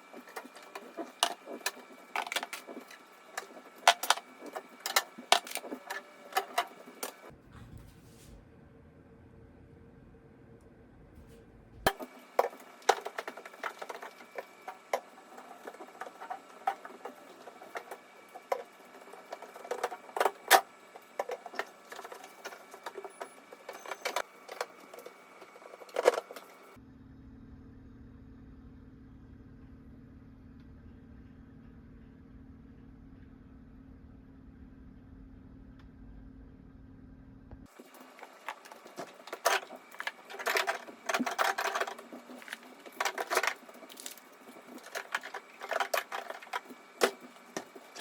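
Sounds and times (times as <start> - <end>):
small hard objects clattering: 0.0 - 7.3, 11.9 - 26.8, 37.7 - 48.0
faint low hum: 0.0 - 48.0.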